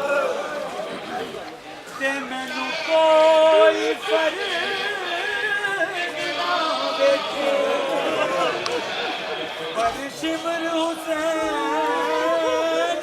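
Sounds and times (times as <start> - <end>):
solo voice chanting a lament: 2.0 - 8.8, 9.8 - 13.0.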